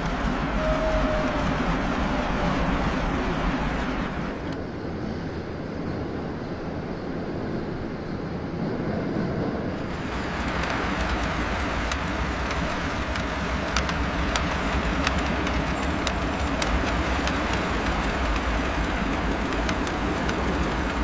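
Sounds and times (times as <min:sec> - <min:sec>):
toy train motor and wheels rumbling: 0:09.8 - 0:21.0
sharp clicks at track joints: 0:09.9 - 0:21.0.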